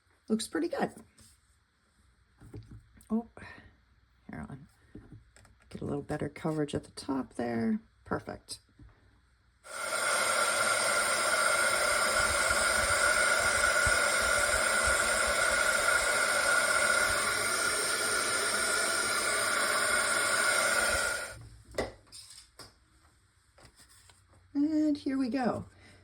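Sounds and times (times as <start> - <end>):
heat tool fan hiss and whine: 9.6 - 24.2.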